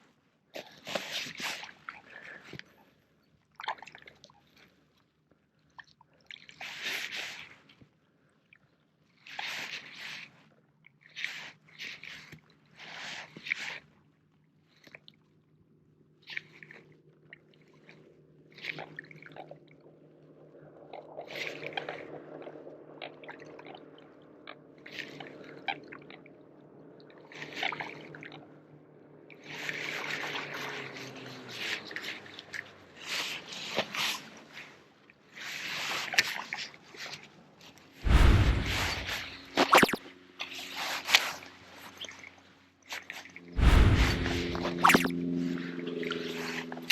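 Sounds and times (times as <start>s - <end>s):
steady low hum: 38.0s - 39.8s, 43.4s - 46.2s.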